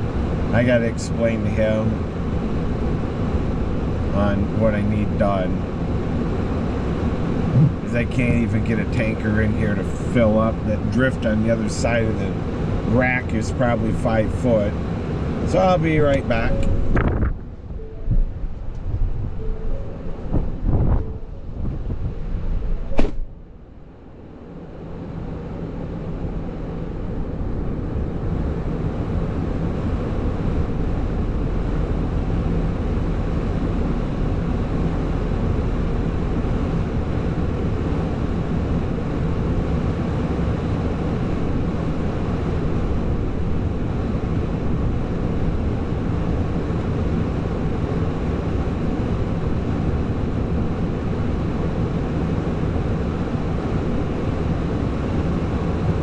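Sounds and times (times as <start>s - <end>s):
wind noise: 6.7s - 7.9s, 16.3s - 23.3s
sharp knock: 7.6s - 7.8s, 22.9s - 23.3s.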